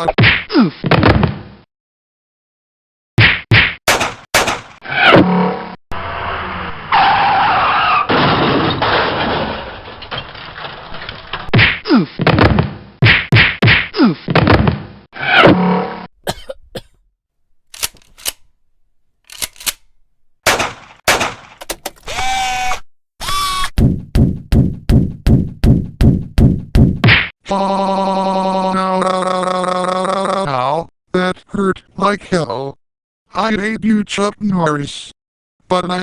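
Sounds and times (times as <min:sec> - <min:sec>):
punches and thuds: 0:03.2 - 0:04.8, 0:11.6 - 0:14.8, 0:20.5 - 0:21.8, 0:23.8 - 0:27.3.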